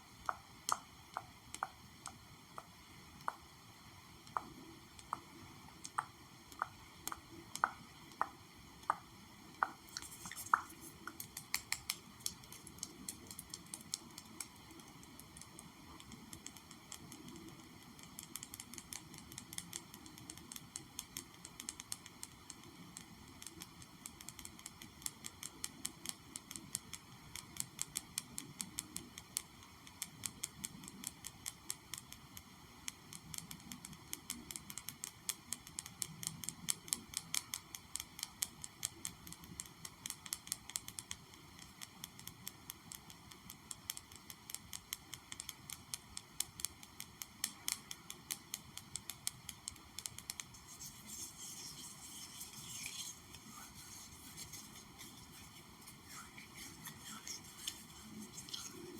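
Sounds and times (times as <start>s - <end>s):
tapping on an object: 9.6s - 14.0s.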